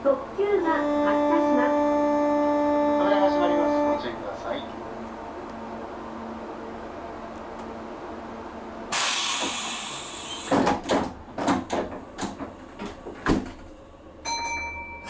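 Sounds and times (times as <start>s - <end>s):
high electronic tone: 0.7s - 4.1s
hiss of air: 8.9s - 10.5s
train doors knocking shut: 10.3s - 13.8s.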